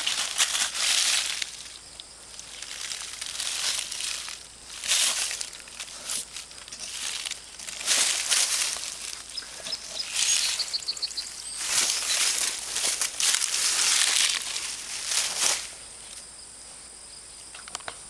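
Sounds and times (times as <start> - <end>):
dry vines and leaves rustling: 0.0 - 16.3
high-pitched insect trill: 0.0 - 18.0.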